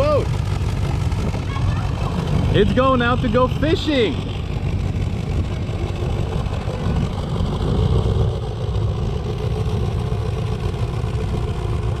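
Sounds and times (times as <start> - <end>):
boat engine rumbling: 0.0 - 12.0.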